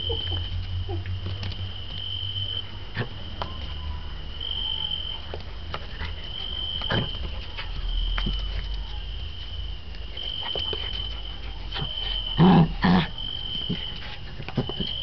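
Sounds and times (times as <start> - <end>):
insect trilling: 0.0 - 5.3.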